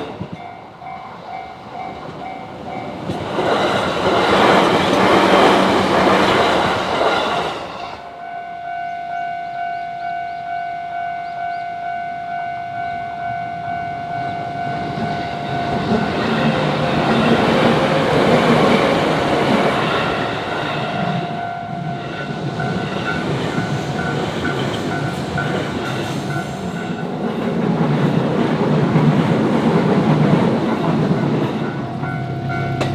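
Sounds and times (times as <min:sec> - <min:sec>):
train wheels clattering on rails: 0:00.0 - 0:08.0, 0:14.7 - 0:32.9
level crossing warning bell: 0:08.0 - 0:28.4, 0:29.7 - 0:32.9.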